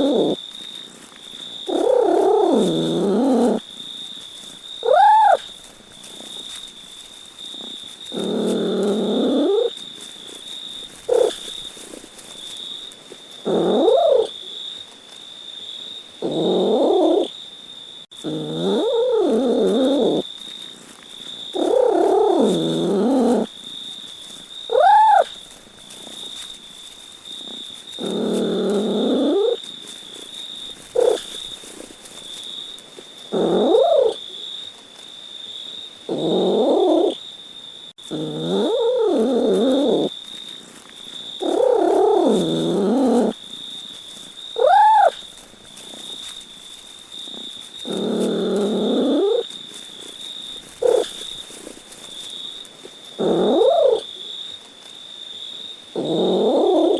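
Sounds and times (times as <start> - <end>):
cat meowing: 4.8 - 5.4, 13.5 - 14.3, 24.7 - 25.4, 33.4 - 34.2, 44.6 - 45.2, 53.3 - 54.0.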